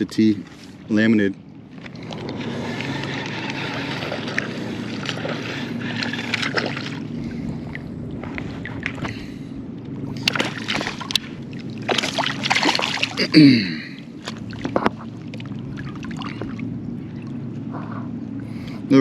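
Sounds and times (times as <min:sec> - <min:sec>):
water sloshing and splashing: 0:00.0 - 0:18.9
low steady hum: 0:00.0 - 0:19.0.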